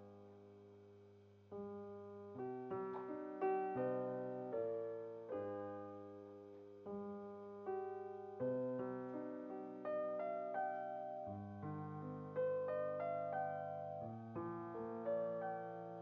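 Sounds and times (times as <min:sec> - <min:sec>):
slow piano chords: 0:01.5 - 0:16.0.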